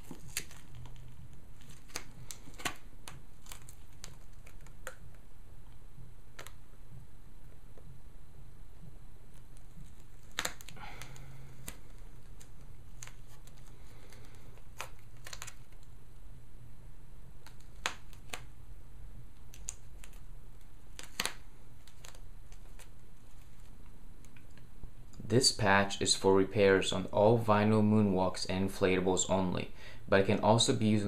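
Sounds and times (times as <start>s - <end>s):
soft handling sounds: 0.0s - 8.0s, 9.3s - 15.9s, 19.4s - 25.3s
low steady hum: 0.0s - 31.0s.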